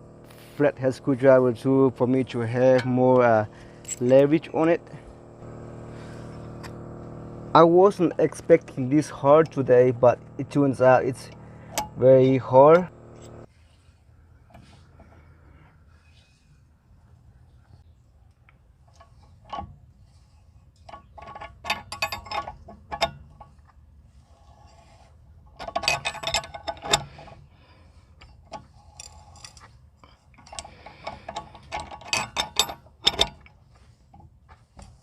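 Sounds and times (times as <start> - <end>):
metal tools clicking and clinking: 20.7 - 23.7, 25.5 - 27.4, 28.2 - 34.2.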